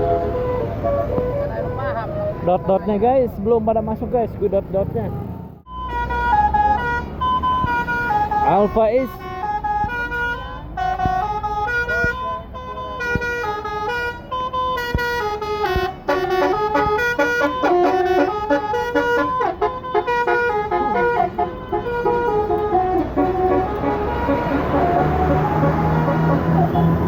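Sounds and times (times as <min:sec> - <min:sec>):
multi-tone air horn playing a tune: 0:05.7 - 0:27.0.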